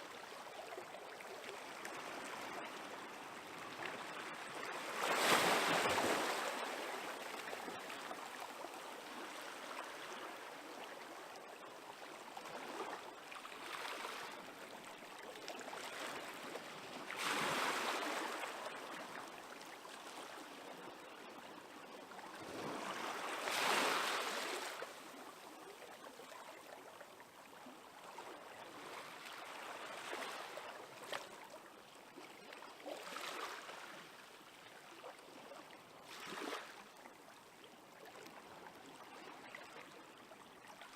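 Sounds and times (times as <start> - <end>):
small waves washing onto shore: 1.6 - 10.9, 15.5 - 21.2, 22.0 - 25.2, 36.0 - 37.1.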